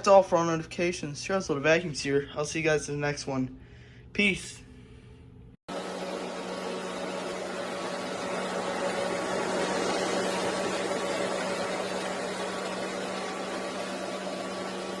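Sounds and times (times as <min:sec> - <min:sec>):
vacuum cleaner running: 0:05.7 - 0:15.0.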